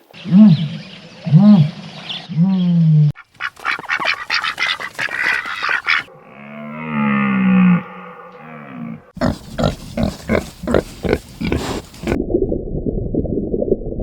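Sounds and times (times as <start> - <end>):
rising and falling animal calls: 2.3 - 12.2.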